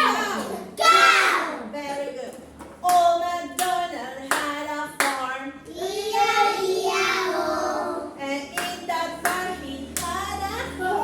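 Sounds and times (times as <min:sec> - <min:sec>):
voices singing or chanting: 0:05.7 - 0:11.0
hand claps: 0:08.6 - 0:10.2.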